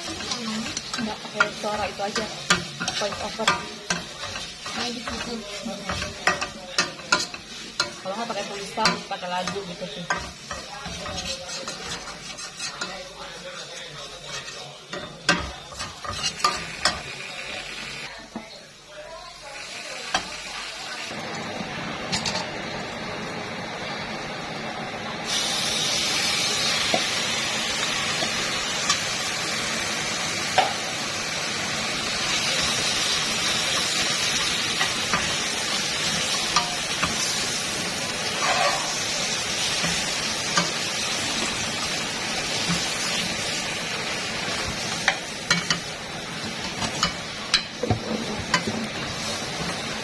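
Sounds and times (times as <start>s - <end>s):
utensil clinking against pan: 0.0s - 13.1s, 44.5s - 45.9s, 46.6s - 49.9s
food sizzling in a pan: 0.0s - 50.0s.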